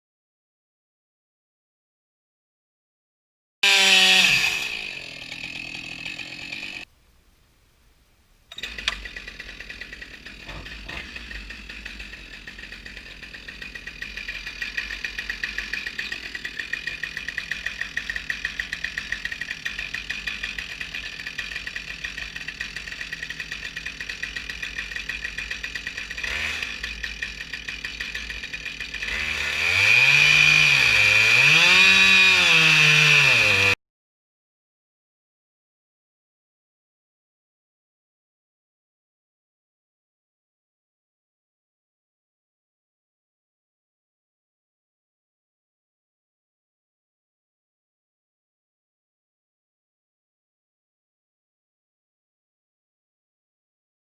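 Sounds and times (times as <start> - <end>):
chainsaw running and revving: 3.6 - 6.9, 8.6 - 33.8.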